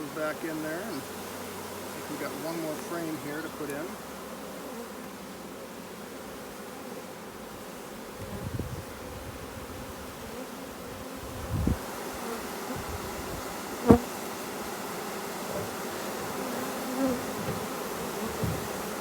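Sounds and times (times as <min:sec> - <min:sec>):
bees buzzing: 0:00.0 - 0:19.0
dull bumps: 0:15.5 - 0:16.4, 0:17.1 - 0:19.0.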